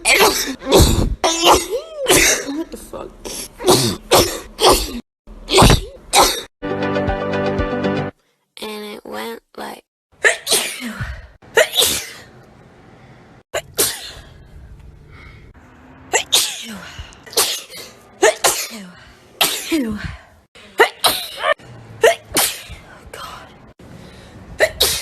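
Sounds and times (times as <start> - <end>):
person sneezing: 24.6 - 25.0.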